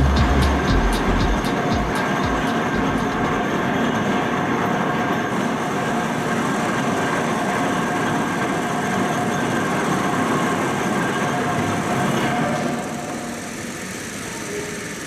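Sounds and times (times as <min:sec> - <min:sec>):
train running noise: 0:00.0 - 0:15.0.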